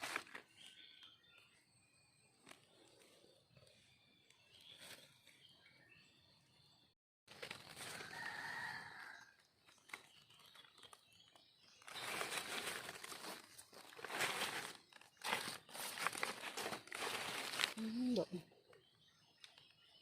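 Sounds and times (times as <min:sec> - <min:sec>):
dry leaves rustling and crackling: 0:07.3 - 0:11.1, 0:11.8 - 0:18.3.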